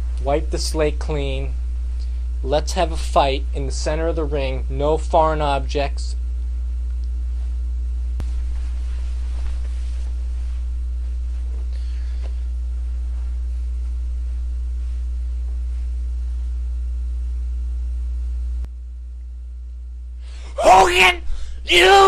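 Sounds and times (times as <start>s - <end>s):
low electrical hum: 0.0s - 22.0s
click: 6.9s - 7.2s.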